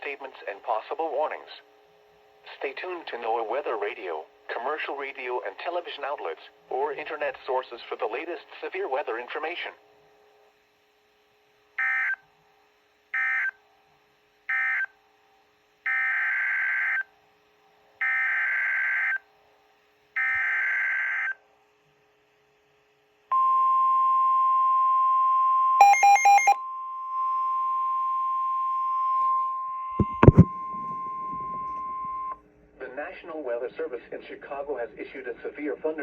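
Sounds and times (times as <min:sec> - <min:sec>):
weather radio alarm tone: 0:20.2 - 0:21.4, 0:25.8 - 0:26.6, 0:27.2 - 0:32.4
quick beeps: 0:25.8 - 0:26.6, 0:29.9 - 0:32.4.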